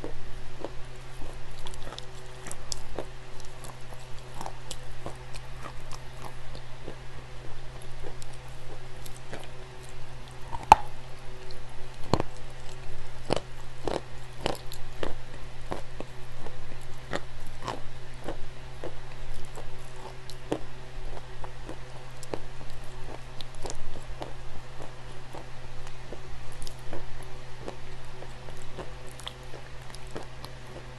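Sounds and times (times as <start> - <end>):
steady low hum: 0.0 - 30.9
clay crunching and cracking: 0.6 - 20.6.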